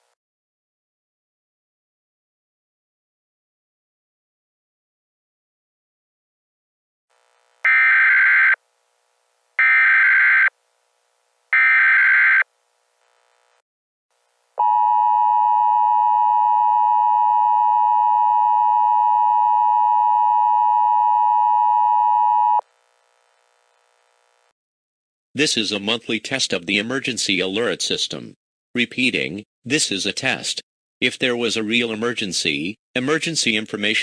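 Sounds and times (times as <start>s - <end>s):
screeching data tones: 7.7s - 8.6s, 9.6s - 10.5s, 11.6s - 12.4s
two-tone alarm: 7.7s - 8.6s, 9.6s - 10.5s, 11.6s - 12.4s, 14.6s - 22.6s.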